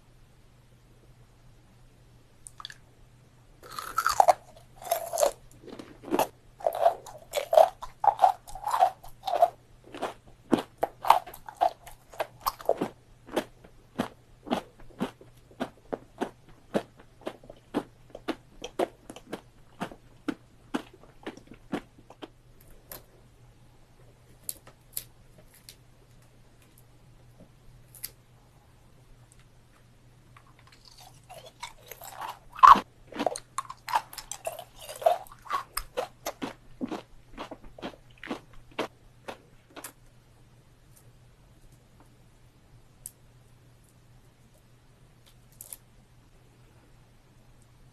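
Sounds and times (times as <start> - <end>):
crunching sugar candy: 3.6 - 23.1, 30.4 - 40.0.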